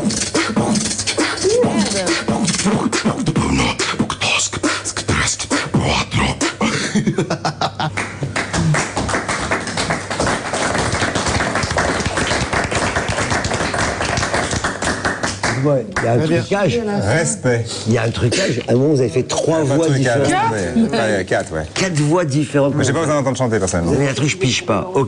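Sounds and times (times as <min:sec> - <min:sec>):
man beatboxing: 0:00.0 - 0:06.8.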